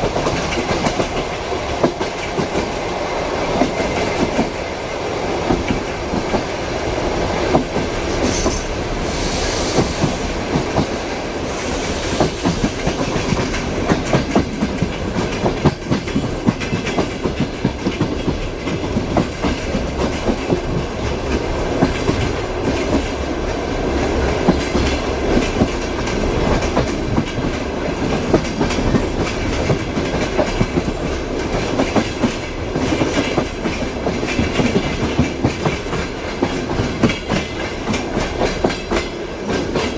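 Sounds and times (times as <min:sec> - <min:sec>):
short high hisses: 0:09.0 - 0:10.3
train wheels clattering over rail joints: 0:11.7 - 0:39.9.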